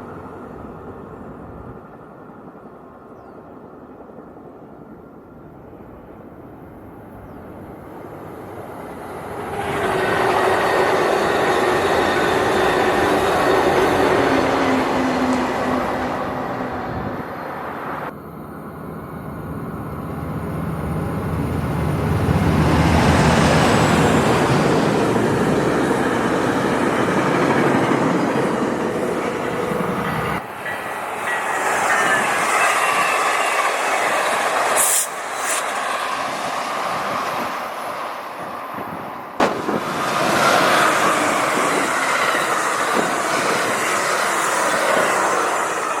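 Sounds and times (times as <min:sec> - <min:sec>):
train wheels rumbling on rails: 0:08.1 - 0:46.0.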